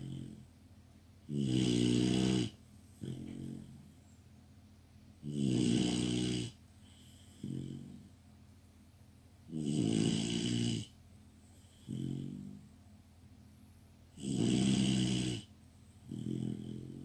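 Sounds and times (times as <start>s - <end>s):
puppy snoring: 0.0s - 0.6s, 1.2s - 4.0s, 5.2s - 8.2s, 9.5s - 12.8s, 14.1s - 17.0s.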